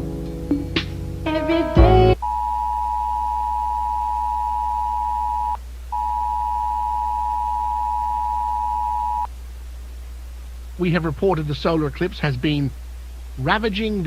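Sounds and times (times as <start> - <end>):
low steady hum: 0.0 - 14.0
two-tone attention beep: 2.2 - 9.3.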